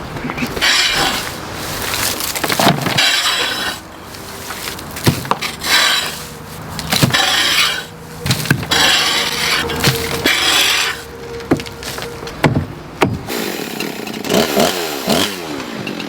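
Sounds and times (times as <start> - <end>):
chainsaw chain rasping through wood: 0.5 - 16.0
chainsaw engine running: 13.1 - 16.0.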